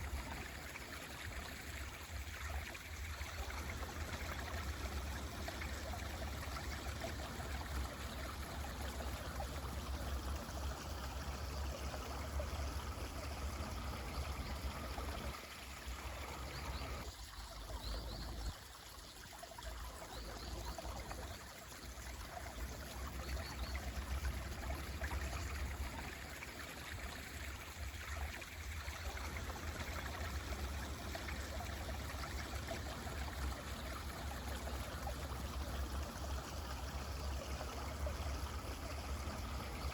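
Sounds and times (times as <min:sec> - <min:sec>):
stream rushing and trickling: 0:00.0 - 0:39.9
faint bird chirps: 0:13.2 - 0:21.5.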